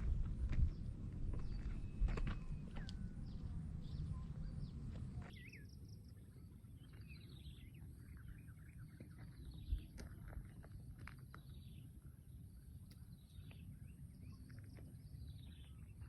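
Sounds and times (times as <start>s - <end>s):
low rumble: 0.0s - 5.3s
birds chirping: 0.0s - 16.0s.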